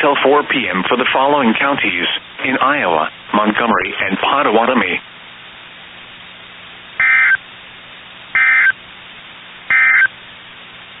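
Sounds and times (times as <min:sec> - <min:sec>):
steady background hiss: 0:00.0 - 0:11.0
digital data tone bursts: 0:07.0 - 0:07.4, 0:08.4 - 0:08.8, 0:09.7 - 0:10.1.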